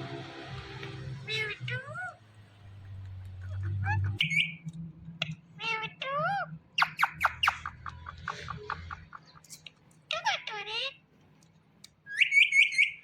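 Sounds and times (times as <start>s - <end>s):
parakeet squawking: 1.2s - 2.2s, 3.4s - 4.7s, 5.3s - 11.0s, 12.1s - 13.0s
parakeet whistled calls: 4.1s - 4.6s, 6.8s - 7.7s, 12.1s - 13.0s.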